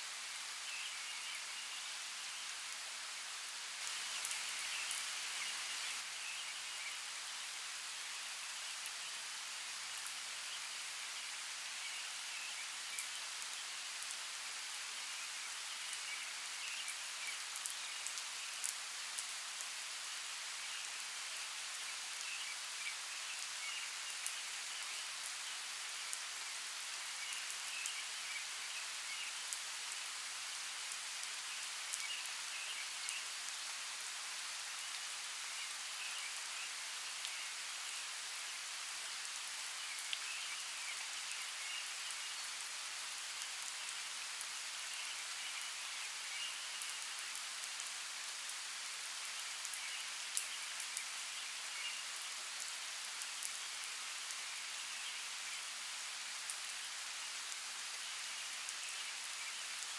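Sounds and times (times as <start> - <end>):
steady rain: 0.0 - 59.9.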